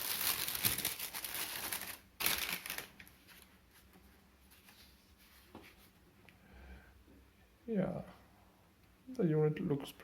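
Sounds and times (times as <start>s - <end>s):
packaging crinkling and rustling: 0.0s - 3.5s
faint handling sounds: 0.7s - 6.4s.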